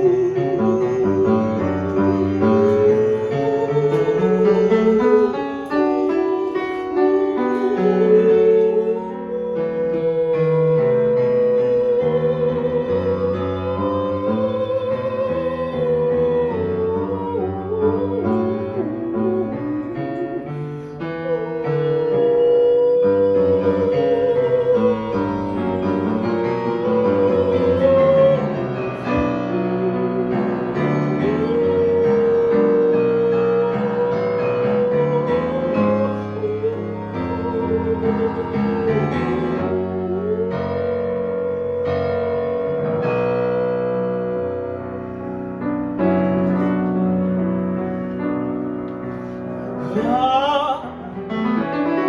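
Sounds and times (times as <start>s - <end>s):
wordless singing with vibrato: 0.0s - 44.6s, 49.2s - 52.0s
piano accompaniment: 0.0s - 52.0s.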